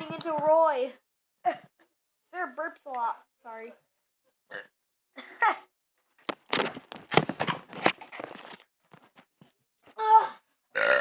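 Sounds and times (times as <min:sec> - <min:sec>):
child burping: 0:04.5 - 0:05.7, 0:10.7 - 0:11.0.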